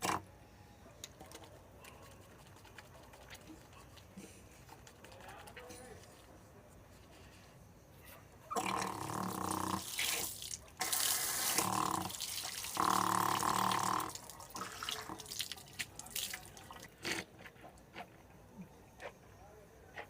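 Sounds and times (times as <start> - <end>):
water running from a tap: 9.5 - 16.7
small water splashes and drips: 9.8 - 13.0, 14.0 - 16.9.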